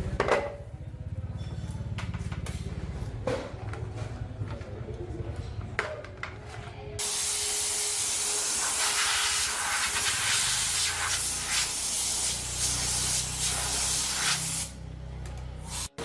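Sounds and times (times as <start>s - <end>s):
loud spraying hiss: 7.0s - 14.8s.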